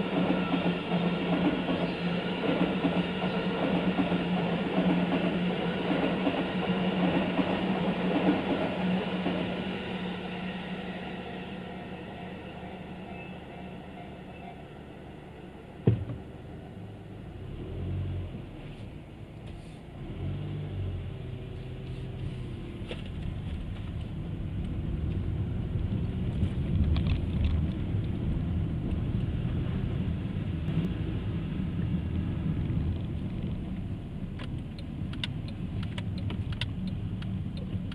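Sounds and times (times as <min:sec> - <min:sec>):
car engine and road rumble: 0:15.5 - 0:37.9
sharp knock: 0:15.8 - 0:16.2.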